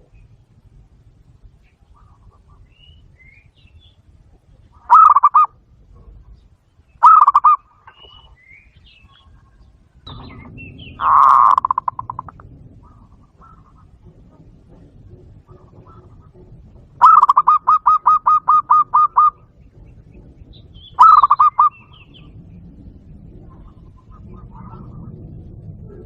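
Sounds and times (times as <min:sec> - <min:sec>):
dove cooing: 0:04.5 - 0:06.4, 0:07.0 - 0:08.4, 0:09.0 - 0:26.0.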